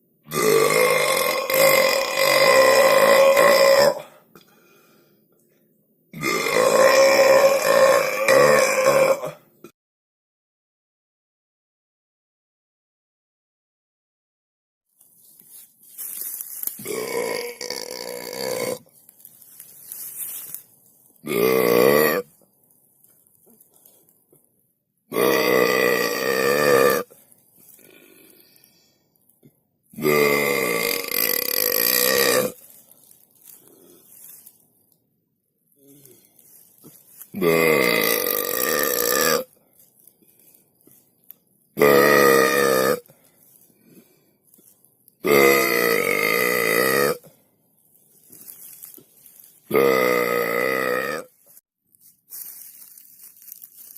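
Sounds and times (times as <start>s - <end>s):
person belching: 0.3s - 4.1s, 6.2s - 9.4s, 16.8s - 18.9s, 21.2s - 22.3s, 25.1s - 27.1s, 30.0s - 32.6s, 37.3s - 39.5s, 41.8s - 43.0s, 45.2s - 47.3s, 49.7s - 51.3s.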